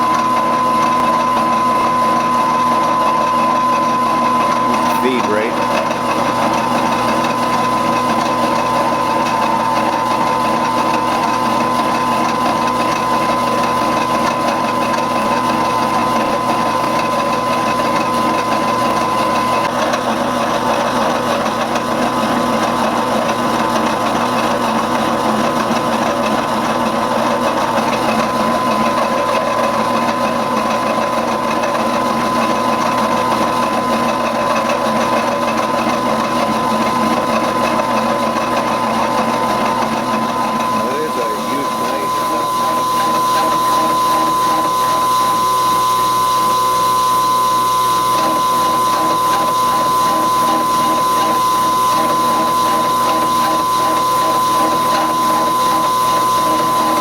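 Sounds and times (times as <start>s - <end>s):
high-pitched whine: 0.0s - 6.6s, 39.9s - 57.0s
milling saw cutting steel: 0.0s - 24.6s, 25.4s - 57.0s.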